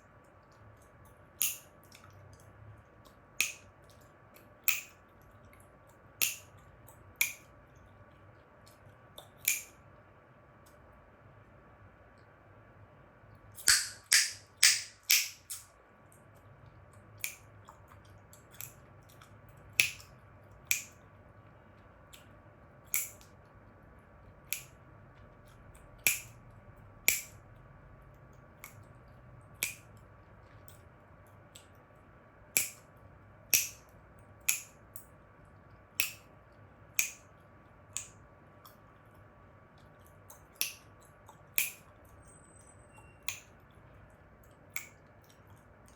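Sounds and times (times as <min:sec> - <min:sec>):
chewing gum snapping: 0:13.6 - 0:15.7, 0:16.4 - 0:21.0.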